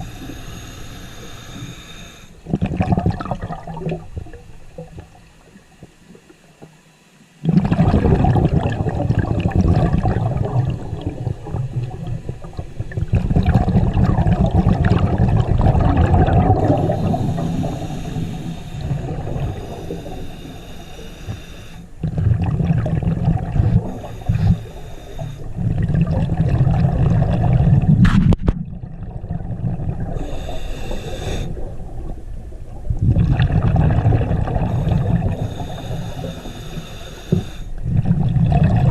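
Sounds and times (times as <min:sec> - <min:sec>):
regulator inhalation hiss: 0:00.0 - 0:02.5, 0:16.5 - 0:22.0, 0:23.6 - 0:25.6, 0:30.2 - 0:31.8, 0:34.5 - 0:37.8
exhaled bubbles gurgling: 0:00.0 - 0:06.4, 0:07.4 - 0:38.9.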